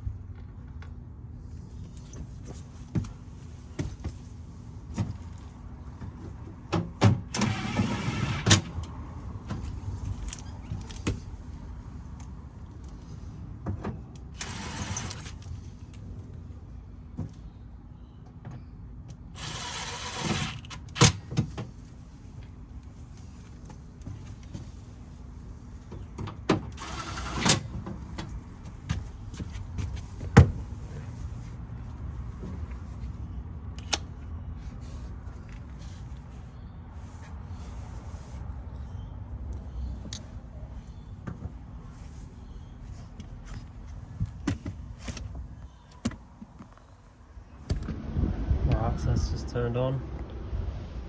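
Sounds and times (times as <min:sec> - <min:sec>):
small electric motor whirring: 0:19.4 - 0:20.7.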